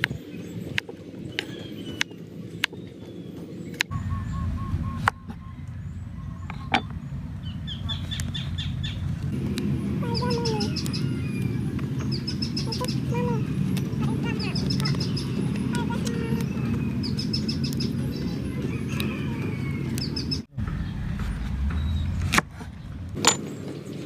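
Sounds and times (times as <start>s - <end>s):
small birds chirping: 0.0s - 24.0s
low rumble: 3.9s - 23.4s.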